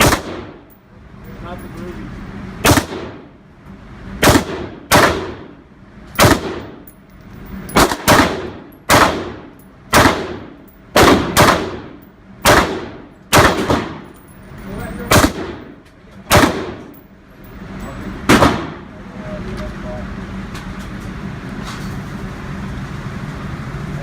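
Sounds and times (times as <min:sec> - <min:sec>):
rifle shots with echo: 0:00.0 - 0:00.7, 0:02.6 - 0:03.3, 0:04.2 - 0:05.6, 0:06.2 - 0:06.9, 0:07.8 - 0:14.2, 0:15.1 - 0:17.0, 0:18.3 - 0:18.9.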